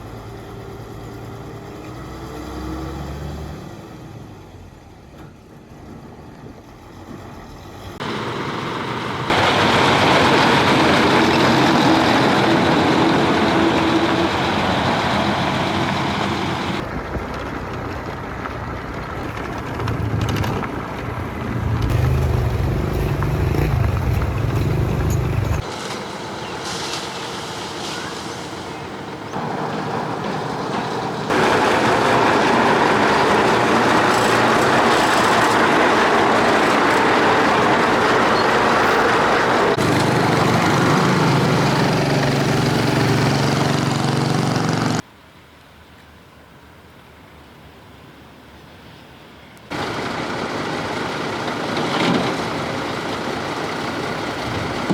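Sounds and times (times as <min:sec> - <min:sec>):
heavy diesel machinery running: 0:05.4 - 0:45.0, 0:49.7 - 0:54.9
deep rumble: 0:16.7 - 0:25.6.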